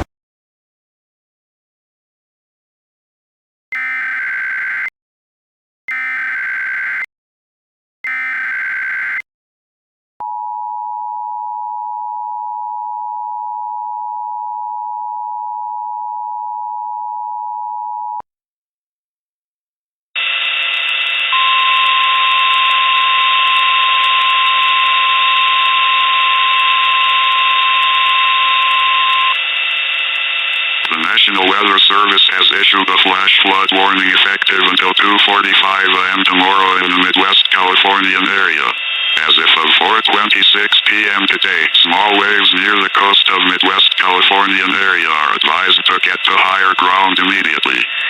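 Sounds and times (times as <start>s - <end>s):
harsh buzzing alarm: 3.7s - 4.9s, 5.9s - 7.1s, 8.0s - 9.2s, 20.2s - 48.0s
two-tone attention signal: 21.3s - 29.4s, 35.8s - 44.4s
steady high tone: 30.8s - 48.0s
warbling data bursts: 30.9s - 48.0s.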